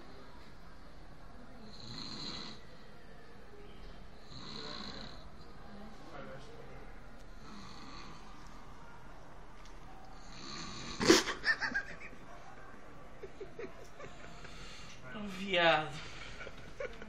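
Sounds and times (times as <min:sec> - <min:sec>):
man snoring heavily: 0:01.7 - 0:02.6, 0:04.3 - 0:05.2, 0:07.4 - 0:08.2
stifled giggling: 0:11.0 - 0:12.4, 0:13.1 - 0:14.6, 0:16.2 - 0:17.0.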